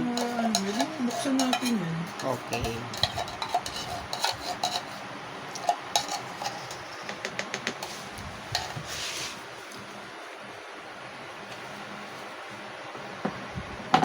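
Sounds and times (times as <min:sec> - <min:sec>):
metal kitchenware clinking: 0:00.0 - 0:05.0, 0:05.6 - 0:07.1
short scrape: 0:07.8 - 0:09.4.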